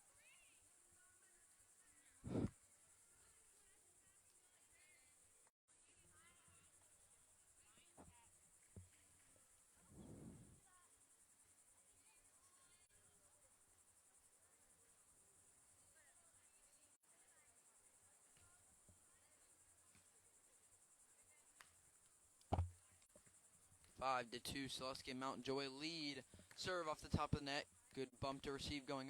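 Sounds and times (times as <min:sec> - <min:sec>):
faint high-pitched hiss: 0:00.0 - 0:29.0
thump: 0:22.5 - 0:22.8.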